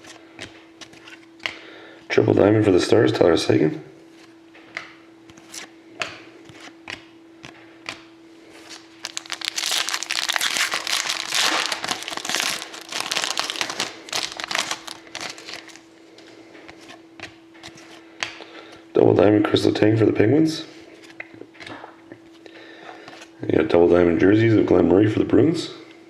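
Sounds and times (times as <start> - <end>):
wrapper being torn and crinkled: 8.7 - 15.8.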